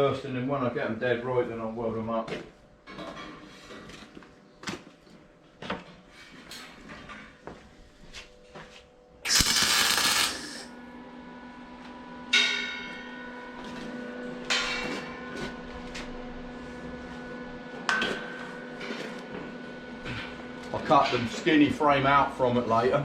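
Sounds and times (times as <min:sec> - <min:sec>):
welding hiss and crackle: 0:09.2 - 0:10.7.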